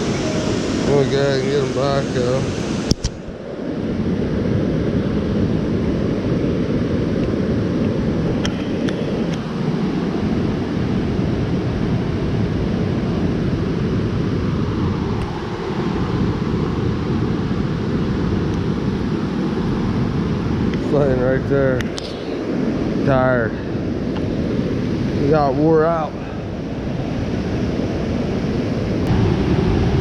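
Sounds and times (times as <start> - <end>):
creek water rushing: 0.0 - 4.0.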